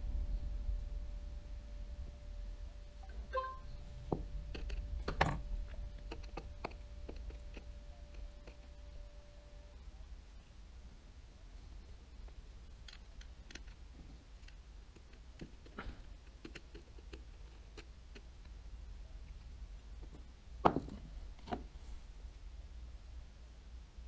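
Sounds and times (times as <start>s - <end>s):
small parts and tools clicking: 4.1s - 9.0s, 12.2s - 18.6s.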